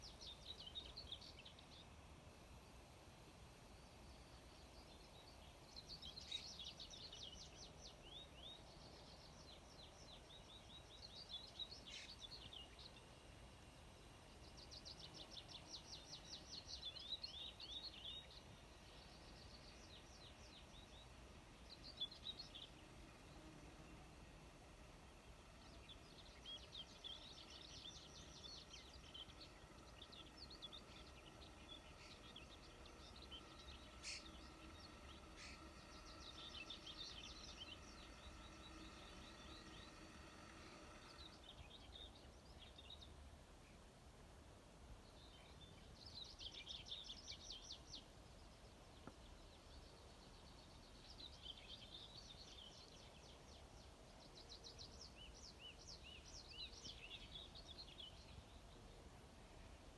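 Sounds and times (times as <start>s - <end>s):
faint steady hum: 0.0s - 59.9s
low background hiss: 0.0s - 59.9s
songbirds chirping: 0.0s - 59.9s.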